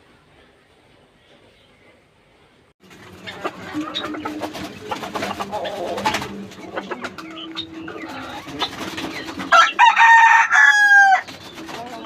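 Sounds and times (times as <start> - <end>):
pigeons cooing softly: 3.2 - 9.8
rooster crowing: 9.5 - 11.3.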